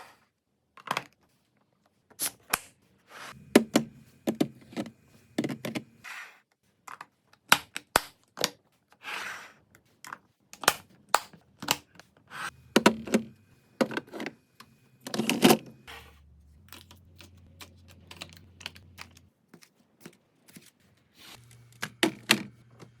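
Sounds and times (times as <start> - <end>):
containers clicking and knocking: 12.6 - 14.4.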